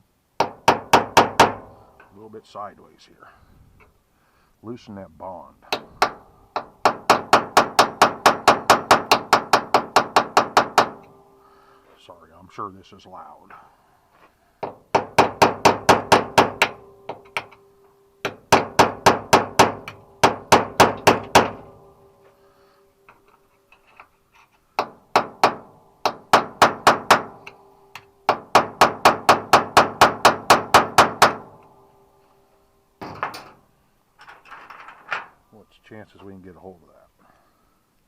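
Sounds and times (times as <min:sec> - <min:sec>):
hammer tapping metal punch: 0:14.6 - 0:17.6.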